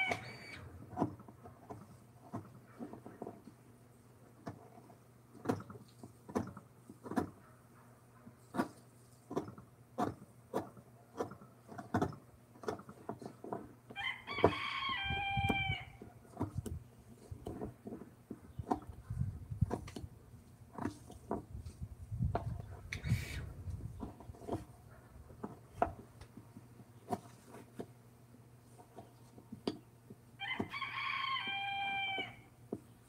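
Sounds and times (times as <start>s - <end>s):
rooster crowing: 14.0s - 16.0s, 30.4s - 32.5s.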